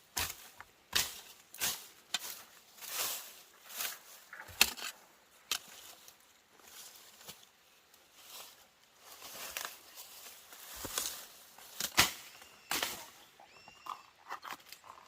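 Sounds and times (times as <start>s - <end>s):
short chirping calls: 12.2s - 14.2s.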